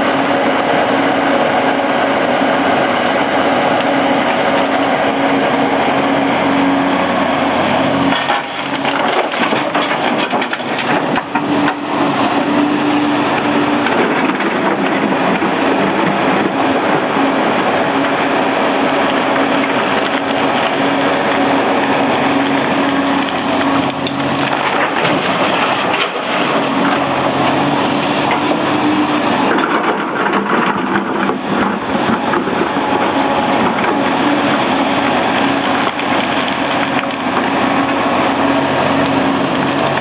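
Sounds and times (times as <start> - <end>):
excavator diesel engine: 0.0 - 40.0
crunching and clattering of digging: 7.9 - 17.0, 18.8 - 40.0.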